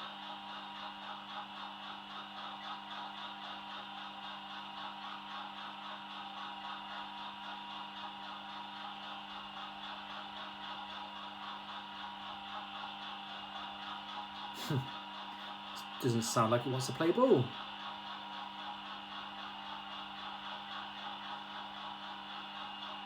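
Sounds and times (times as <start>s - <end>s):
diesel engine idling through small speaker: 13.5s - 17.6s.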